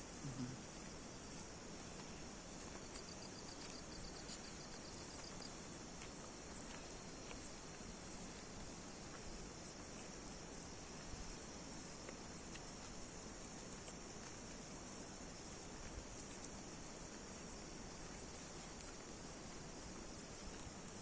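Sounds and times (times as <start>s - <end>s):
insect pulsed trill: 0.0s - 1.7s
night insects chirring: 0.0s - 21.0s
faint ticks: 0.2s - 21.0s.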